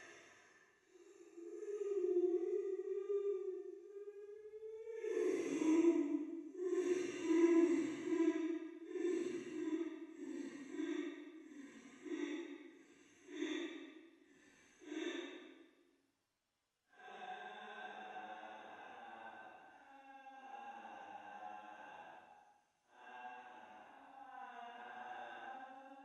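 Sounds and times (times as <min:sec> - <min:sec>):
breathy ghostly voice pulses: 0:00.9 - 0:12.5, 0:17.0 - 0:22.2.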